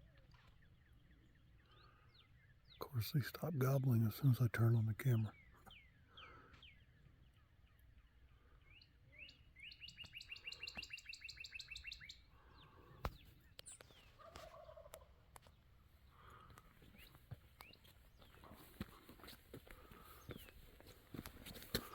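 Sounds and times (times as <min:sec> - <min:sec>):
bird chirps: 0:00.0 - 0:21.9
bird trilling: 0:09.2 - 0:12.8.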